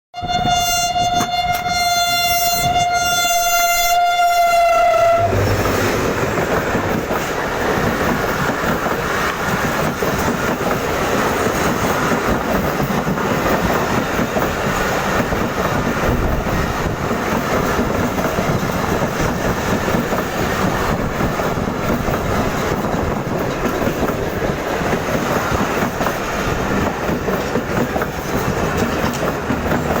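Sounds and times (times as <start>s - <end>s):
train horn: 0.1s - 6.3s
train rumbling past: 0.2s - 30.0s.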